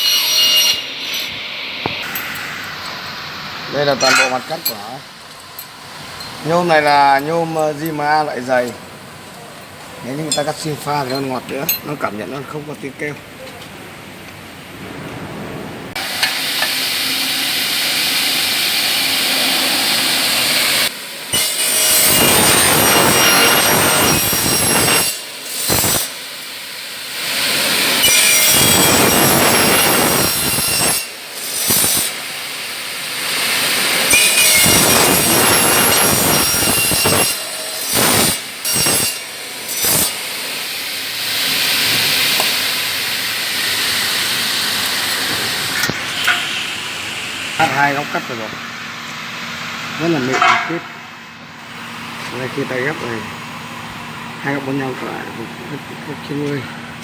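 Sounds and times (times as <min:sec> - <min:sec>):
chop saw cutting aluminium: 0:00.0 - 0:02.9, 0:16.0 - 0:26.3, 0:27.2 - 0:46.7.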